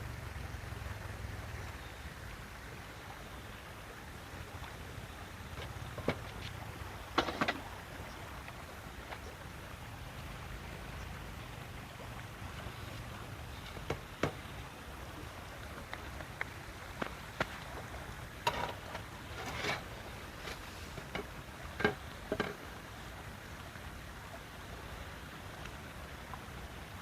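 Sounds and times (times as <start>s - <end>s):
low background hiss: 0.0s - 27.0s
light clicks and knocks: 20.4s - 22.6s.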